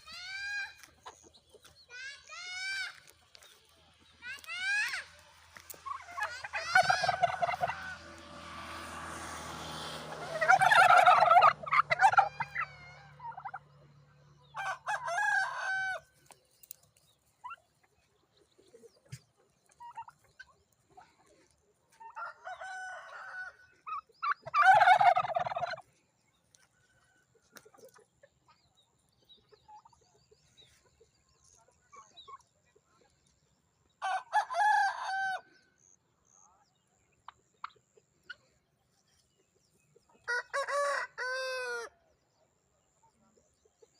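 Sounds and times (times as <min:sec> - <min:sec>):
turkeys gobbling: 0:00.0 - 0:03.6, 0:04.3 - 0:08.3, 0:10.0 - 0:13.8, 0:14.4 - 0:25.9, 0:26.6 - 0:28.6, 0:29.6 - 0:30.1, 0:34.0 - 0:35.5, 0:37.2 - 0:38.4, 0:40.0 - 0:41.9.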